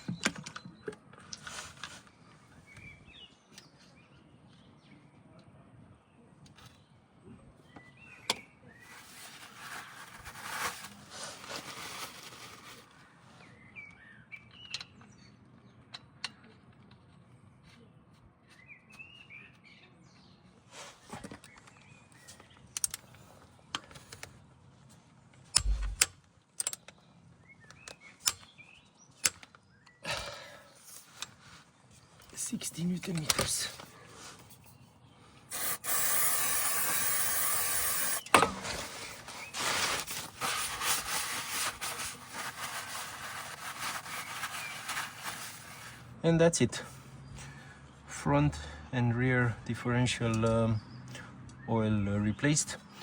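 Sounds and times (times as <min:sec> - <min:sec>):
hiss: 0:35.5 - 0:38.2.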